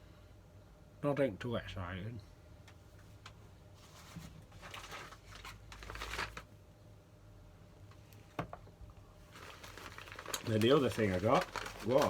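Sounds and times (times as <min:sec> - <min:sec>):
packaging rustling and crinkling: 0:03.8 - 0:06.5, 0:09.2 - 0:12.0.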